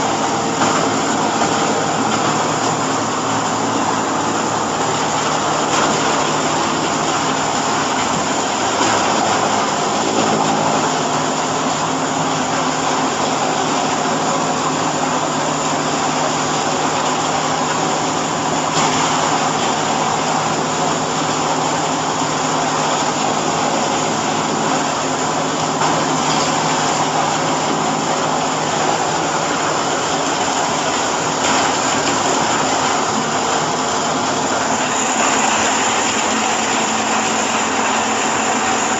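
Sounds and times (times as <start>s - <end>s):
baling machine running: 0.0s - 38.9s.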